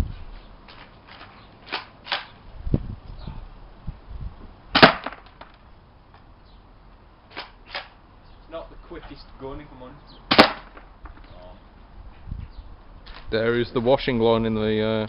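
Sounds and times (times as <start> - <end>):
airsoft shotgun shot snap: 4.8 - 5.2, 10.3 - 10.8.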